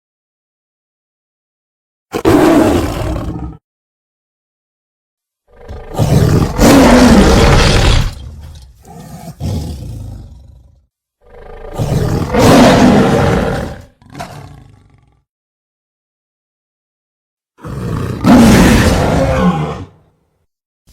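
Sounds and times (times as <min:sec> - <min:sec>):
big cat roars: 0:02.1 - 0:03.6, 0:05.5 - 0:15.3, 0:17.6 - 0:20.1
growls: 0:02.1 - 0:03.6, 0:05.5 - 0:15.3, 0:17.6 - 0:20.1.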